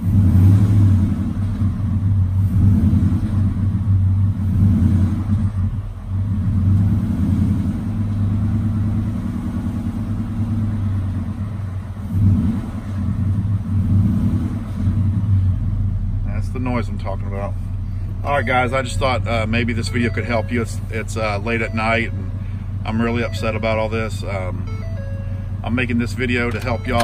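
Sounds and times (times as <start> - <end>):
engine running: 0.0 - 27.0
metallic engine ticking rattle: 16.5 - 27.0.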